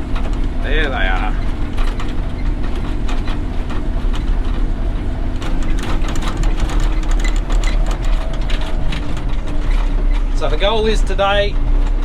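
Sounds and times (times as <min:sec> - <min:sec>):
diesel engine droning: 0:00.0 - 0:12.0
machine rattling clicks: 0:05.3 - 0:12.0.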